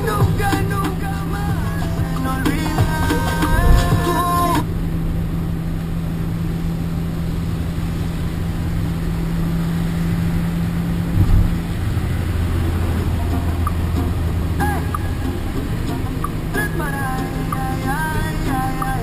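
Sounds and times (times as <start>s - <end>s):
van engine and road noise: 0.0s - 19.0s.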